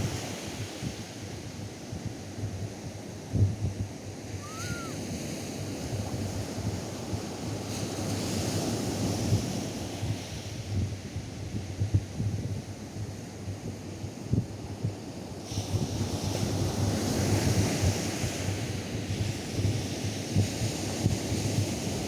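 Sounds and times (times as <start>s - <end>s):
wind buffeting microphone: 0.0s - 22.0s
faint chirp-like call: 4.4s - 5.0s
surf washing onto beach: 4.4s - 10.5s.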